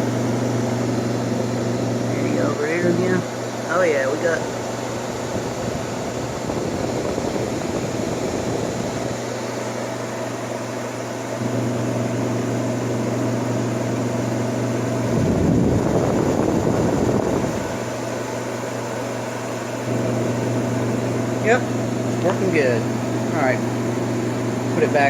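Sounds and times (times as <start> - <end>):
air conditioner blower rushing: 0.0 - 25.0
compressor electrical hum: 0.0 - 25.0
low rumbling rush: 4.4 - 9.3, 15.0 - 17.9.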